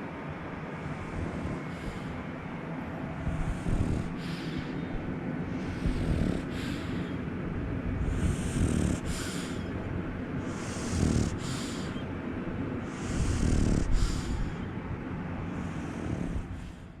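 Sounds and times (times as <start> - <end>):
dog snoring and snorting: 0.8 - 2.2, 3.2 - 7.2, 7.8 - 12.1, 12.8 - 14.7, 15.5 - 17.0.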